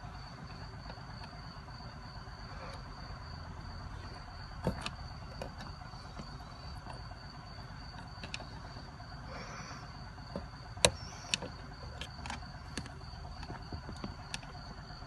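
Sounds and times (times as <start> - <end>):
sharp clicks and knocks: 4.0 - 8.9, 10.3 - 15.0.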